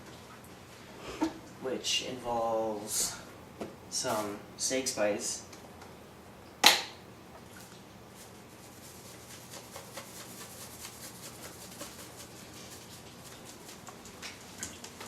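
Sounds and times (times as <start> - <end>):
spice shaker rattling: 8.2 - 14.1.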